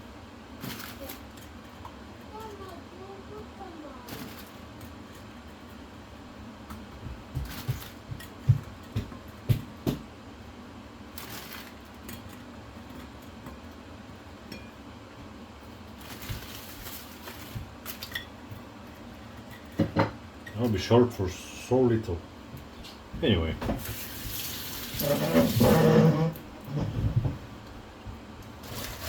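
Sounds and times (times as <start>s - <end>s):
dishes knocking and tapping: 7.0s - 10.1s, 19.6s - 20.2s.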